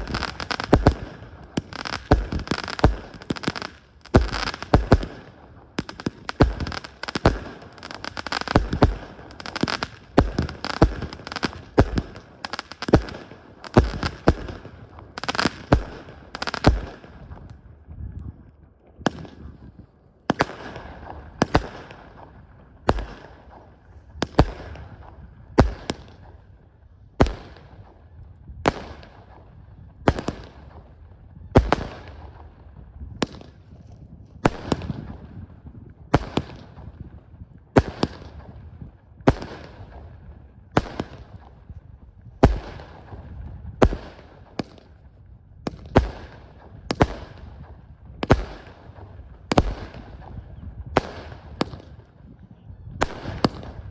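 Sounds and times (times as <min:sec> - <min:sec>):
fireworks bangs: 0:00.0 - 0:17.5, 0:45.7 - 0:52.1, 0:52.9 - 0:53.9.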